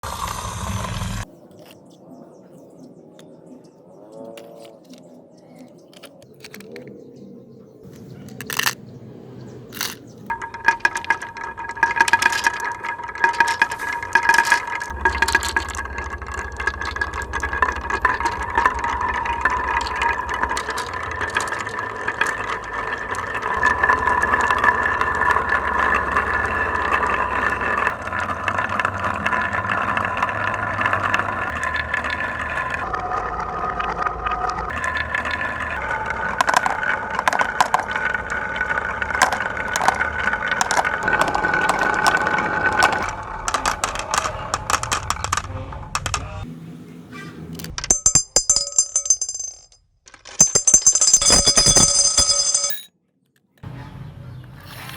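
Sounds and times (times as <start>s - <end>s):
marbles rolling down wooden tracks: 8.4s - 8.8s, 9.7s - 46.3s, 47.8s - 52.9s.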